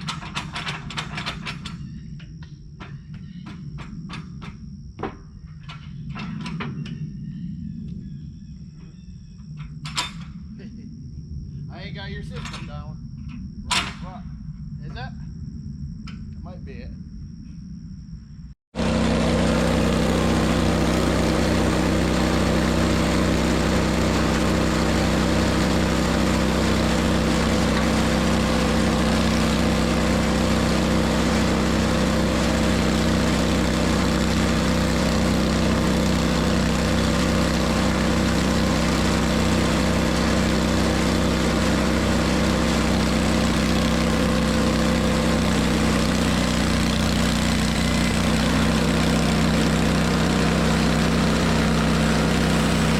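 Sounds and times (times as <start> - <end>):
engine idling: 18.8 - 52.9.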